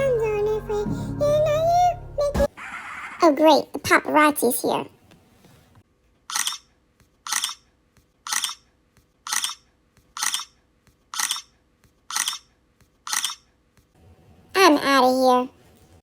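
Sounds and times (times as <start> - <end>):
camera shutter clicks: 6.3 - 6.6, 7.3 - 7.6, 8.3 - 8.6, 9.3 - 9.6, 10.2 - 10.5, 12.1 - 12.5, 13.1 - 13.4.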